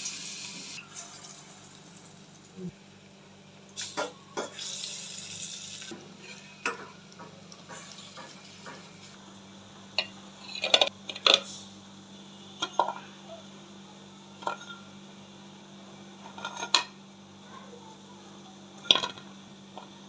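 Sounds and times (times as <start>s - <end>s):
oil sizzling: 0.0s - 9.2s.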